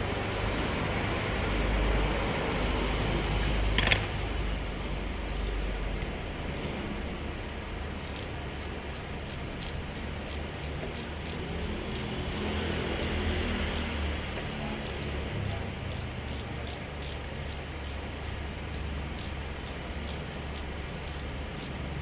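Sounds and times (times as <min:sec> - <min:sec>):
ratcheting clicks: 0:05.2 - 0:07.2, 0:08.0 - 0:14.0, 0:14.8 - 0:21.8.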